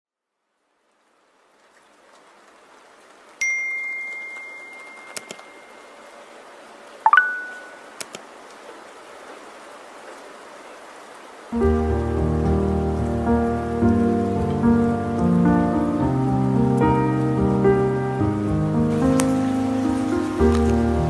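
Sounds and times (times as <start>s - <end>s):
rain hiss: 0.6s - 21.0s
ringing dings: 3.4s - 6.0s, 7.1s - 7.9s.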